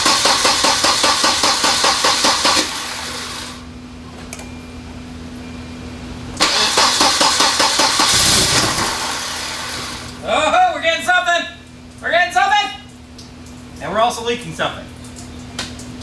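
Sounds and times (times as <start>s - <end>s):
car engine cranking: 0.0s - 3.6s, 6.4s - 10.2s
steady hum: 2.6s - 16.0s.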